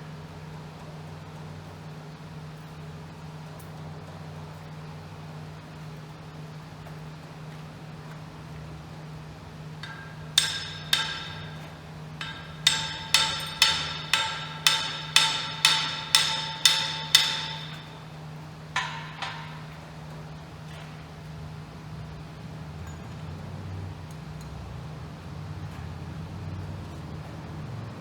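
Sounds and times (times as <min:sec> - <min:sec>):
hammer blows on steel: 0:09.8 - 0:20.0.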